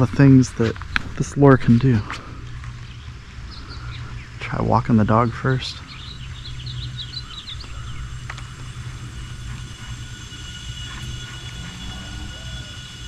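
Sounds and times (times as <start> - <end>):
steady low rumble: 0.0 - 13.0
bird chirping quickly: 2.5 - 13.0
faint high tones: 7.7 - 13.0.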